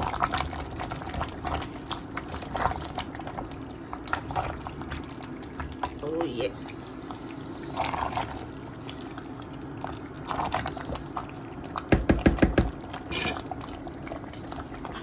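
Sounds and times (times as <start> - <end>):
soup bubbling and sloshing: 0.0 - 15.0
loud knocks: 11.9 - 12.8.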